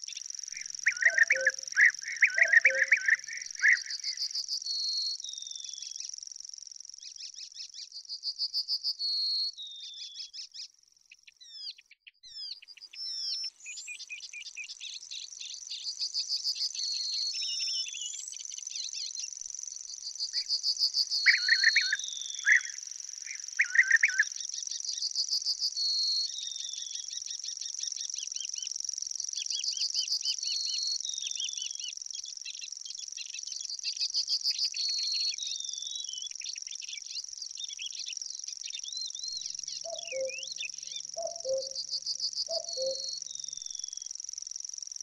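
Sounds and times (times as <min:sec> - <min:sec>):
loud bird chirps: 0:00.0 - 0:06.2, 0:07.0 - 0:45.0
high insect drone: 0:00.0 - 0:07.8, 0:14.7 - 0:45.0
wild birds singing: 0:00.0 - 0:45.0
short low bird calls: 0:39.4 - 0:43.9.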